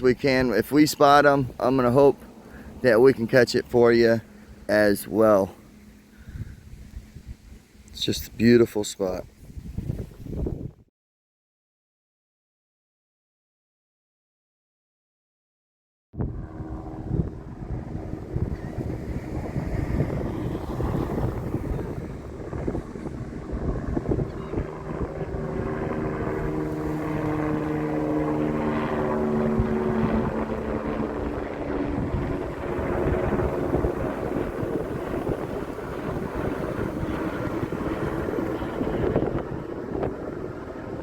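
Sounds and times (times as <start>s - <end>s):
wind buffeting microphone: 0.0s - 10.9s, 16.2s - 41.0s
motor boat engine droning: 2.1s - 7.9s, 16.2s - 41.0s.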